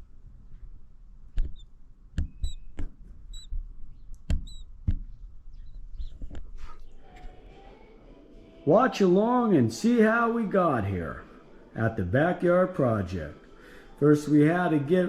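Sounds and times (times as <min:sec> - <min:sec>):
baby birds peeping: 0:03.3 - 0:04.7.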